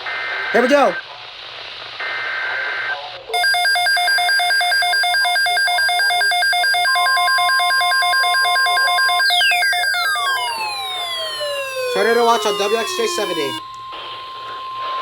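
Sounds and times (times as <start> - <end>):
fast-warbling alarm tone: 3.4 - 15.0.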